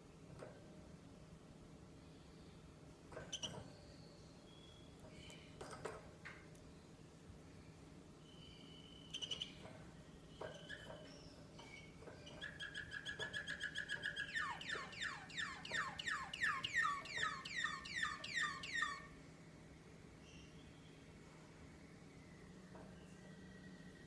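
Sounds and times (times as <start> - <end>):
canary singing: 3.2 - 5.4, 8.2 - 19.2.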